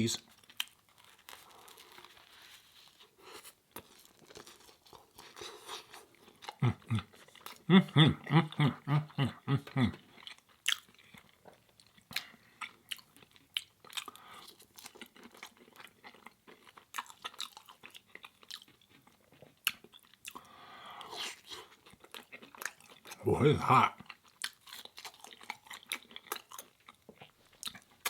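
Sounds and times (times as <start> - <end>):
chewing and crunching food: 0.1 - 28.0.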